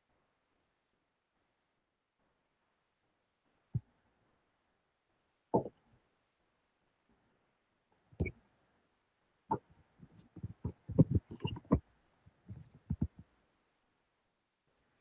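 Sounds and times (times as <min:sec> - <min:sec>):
irregular clicks and knocks: 0:09.5 - 0:13.3.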